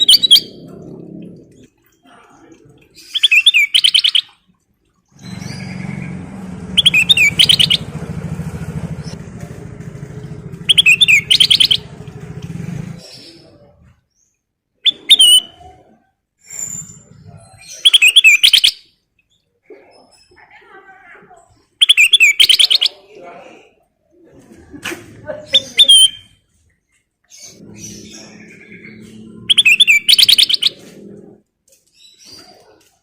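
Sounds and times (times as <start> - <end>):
bird singing: 0.0 - 2.1, 3.0 - 4.4, 5.1 - 15.7, 16.9 - 19.4, 21.8 - 23.1, 27.3 - 31.2
low steady rumble: 5.2 - 14.0.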